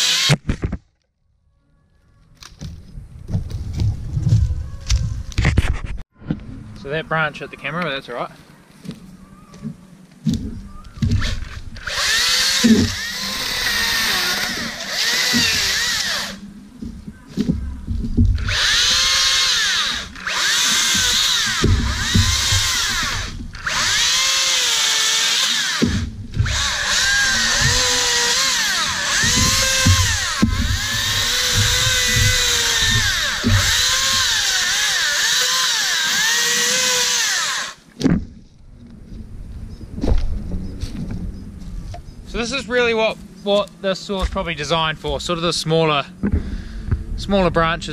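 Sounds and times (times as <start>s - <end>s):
cordless chainsaw cutting branches: 0.0s - 0.4s, 11.2s - 16.4s, 18.4s - 37.9s.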